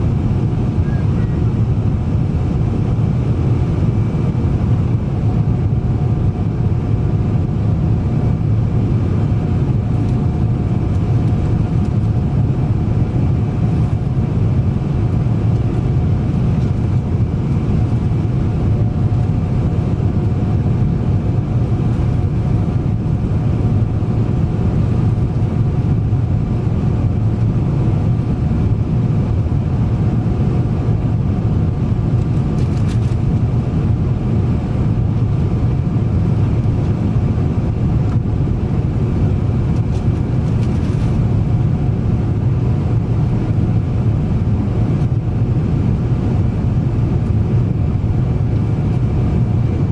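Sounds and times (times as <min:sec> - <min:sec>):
aircraft cabin engine rumble: 0:00.0 - 0:49.9
faint whining tones: 0:00.8 - 0:01.5.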